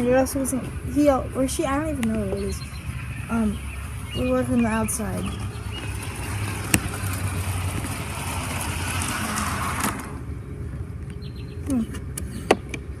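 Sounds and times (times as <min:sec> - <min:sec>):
model train whirring on track: 0:05.8 - 0:10.3.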